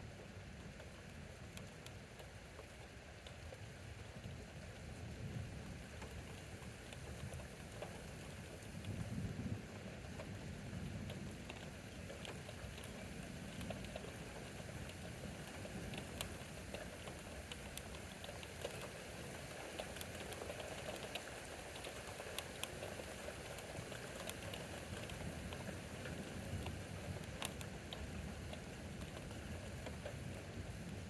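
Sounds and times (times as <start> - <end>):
steady rain falling: 0.0 - 31.0
sharp ticks: 11.1 - 31.0.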